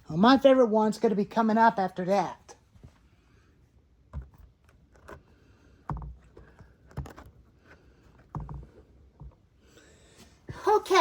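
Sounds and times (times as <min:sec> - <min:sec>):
dull knocks and thumps: 0:05.8 - 0:07.4, 0:08.2 - 0:09.5.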